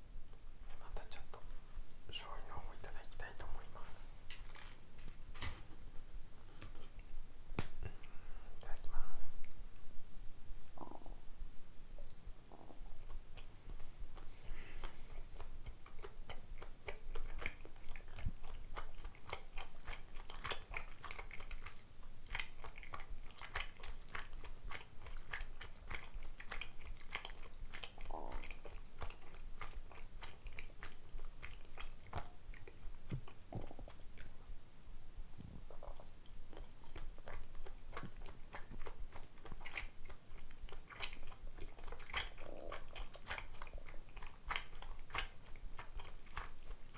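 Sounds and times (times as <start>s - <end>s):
stomach gurgles: 6.7s - 46.9s
wet chewing clicks: 12.0s - 34.7s, 35.3s - 46.9s.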